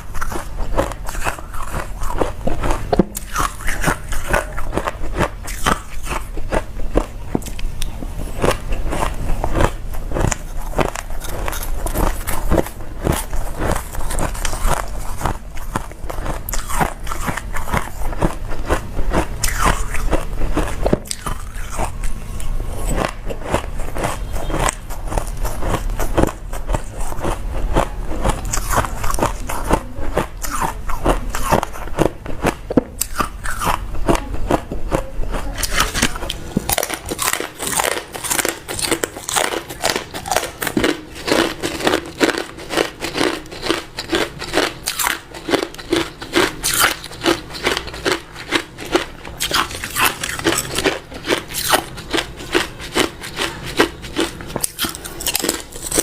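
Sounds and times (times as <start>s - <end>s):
person crunching ice: 0.0s - 7.6s, 8.4s - 22.1s, 22.7s - 34.6s, 35.6s - 56.0s.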